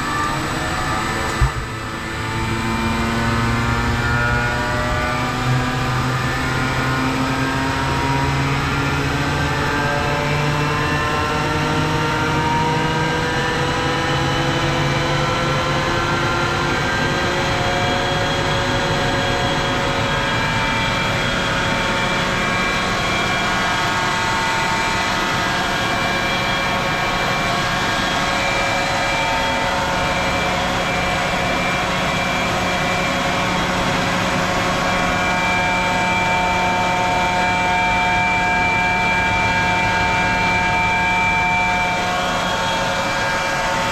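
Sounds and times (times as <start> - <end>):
air compressor running: 0.0 - 3.4.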